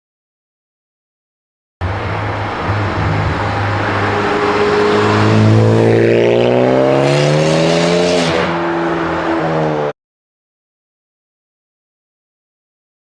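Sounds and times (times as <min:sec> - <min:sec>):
car engine accelerating hard: 0:01.8 - 0:09.9.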